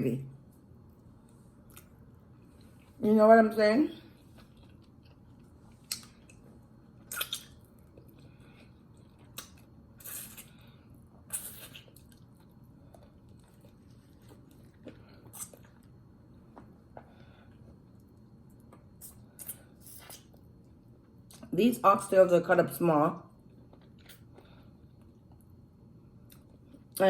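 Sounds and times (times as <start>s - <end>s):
person chewing food: 0.9s - 3.0s, 4.1s - 21.5s, 23.4s - 25.6s
wet mouth smacks: 7.1s - 7.6s.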